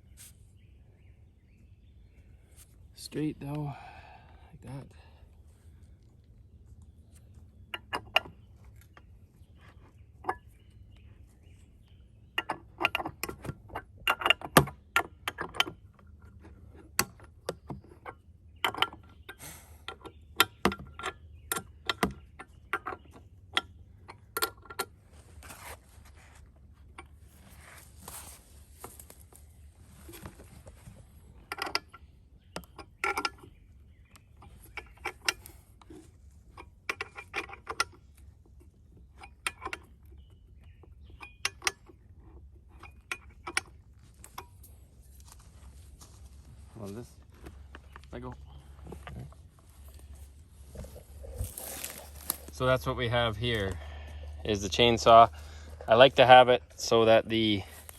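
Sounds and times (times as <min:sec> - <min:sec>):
metal clicks and rattles: 0:12.3 - 0:25.0, 0:31.4 - 0:44.8.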